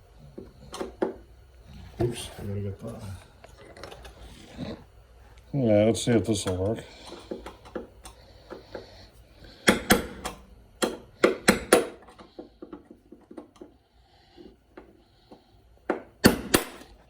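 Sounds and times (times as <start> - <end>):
hammer striking metal punch: 9.6 - 12.0, 15.9 - 16.9.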